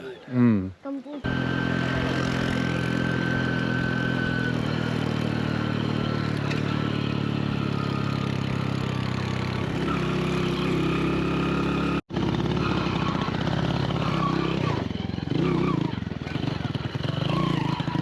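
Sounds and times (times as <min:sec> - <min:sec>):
motorcycle engine running: 0:01.2 - 0:18.0.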